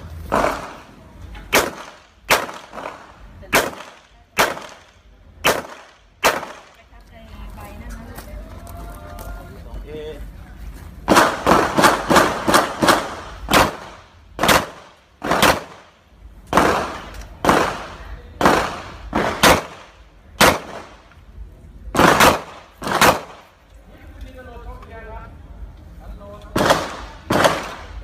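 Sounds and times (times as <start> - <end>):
pistol shots: 0.3 - 0.9, 1.5 - 6.8, 11.1 - 21.1, 21.9 - 23.5, 26.5 - 28.0.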